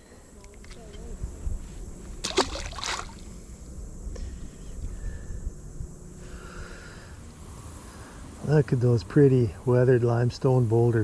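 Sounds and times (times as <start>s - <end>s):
wading through water splashing: 2.2s - 3.2s
steady low rumble: 2.9s - 9.7s.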